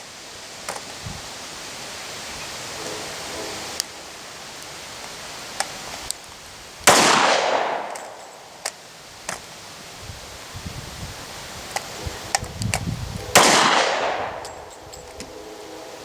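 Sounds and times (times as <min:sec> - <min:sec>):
pistol shot: 0:06.8 - 0:08.2, 0:13.4 - 0:14.5.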